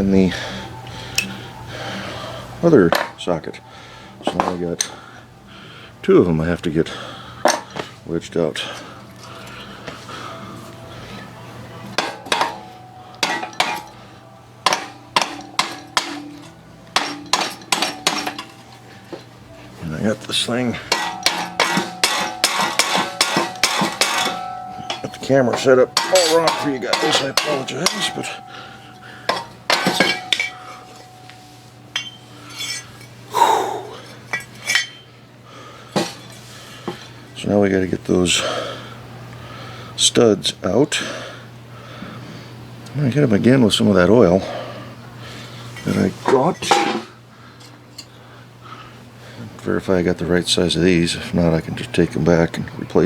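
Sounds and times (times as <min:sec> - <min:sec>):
metal-on-metal strikes ringing: 0:11.9 - 0:14.0, 0:14.6 - 0:18.6, 0:20.8 - 0:35.1
metal tools clinking: 0:12.0 - 0:14.0, 0:14.6 - 0:19.3, 0:20.5 - 0:35.1
metal scraping: 0:20.8 - 0:28.4.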